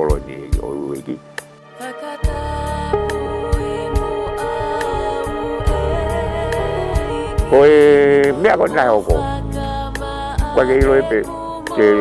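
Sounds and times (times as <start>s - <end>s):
slow background music: 0.0s - 12.0s
soft steady beat: 2.9s - 9.4s.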